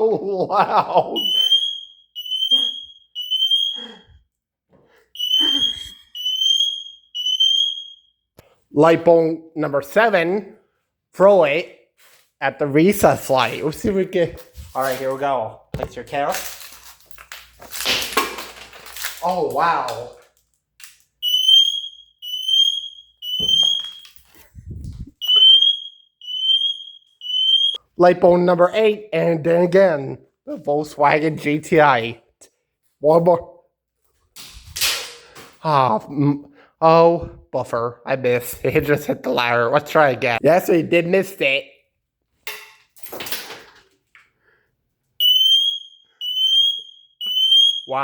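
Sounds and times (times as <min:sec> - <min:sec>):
smoke alarm beeping: 0:01.0 - 0:04.2, 0:05.2 - 0:08.2, 0:21.2 - 0:24.4, 0:25.1 - 0:27.8, 0:45.2 - 0:48.0.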